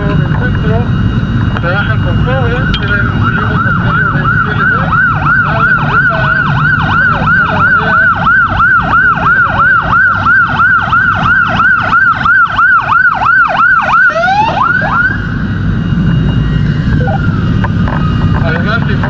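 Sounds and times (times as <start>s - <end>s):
emergency siren yelping: 0.0s - 19.0s
low steady rumble: 0.0s - 19.0s.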